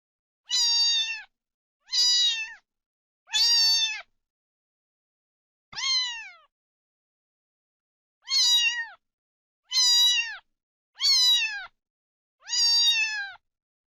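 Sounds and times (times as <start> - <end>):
kitten meowing: 0.5 - 2.6, 3.3 - 4.1, 5.8 - 6.5, 8.2 - 9.0, 9.7 - 10.4, 11.0 - 11.8, 12.4 - 13.4.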